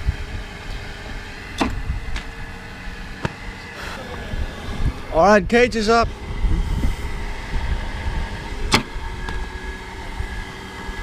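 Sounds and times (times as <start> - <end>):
low rumble: 0.0 - 11.0
bat hitting ball: 1.5 - 2.3, 3.2 - 3.5.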